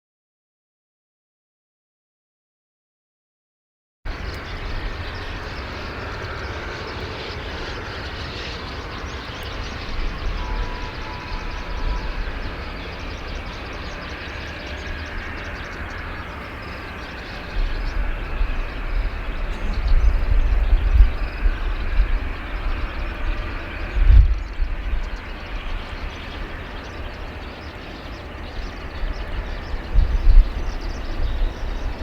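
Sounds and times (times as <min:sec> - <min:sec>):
distant jet engines rushing: 0:04.1 - 0:32.0
low rumble: 0:16.3 - 0:26.6.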